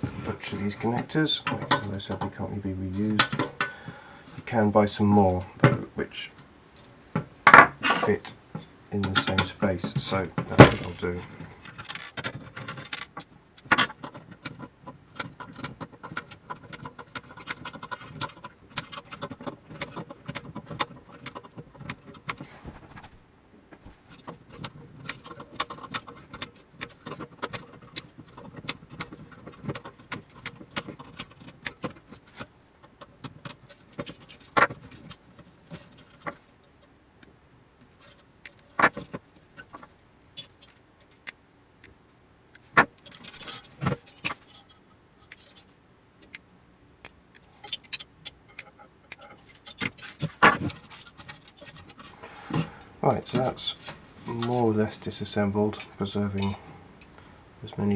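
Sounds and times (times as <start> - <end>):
metal parts clicking and clinking: 9.0 - 22.4, 37.9 - 41.3, 43.0 - 46.4, 47.4 - 54.8.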